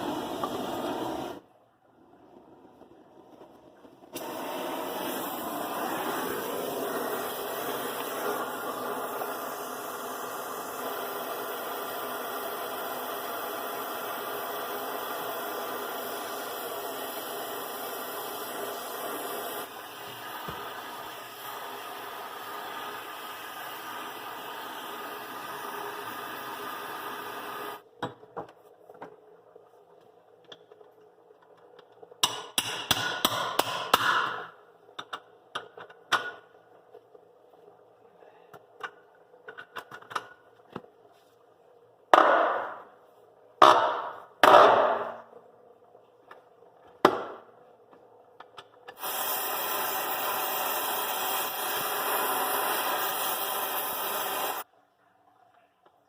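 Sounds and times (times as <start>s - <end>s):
steady hiss: 4.0s - 27.8s, 48.9s - 54.7s.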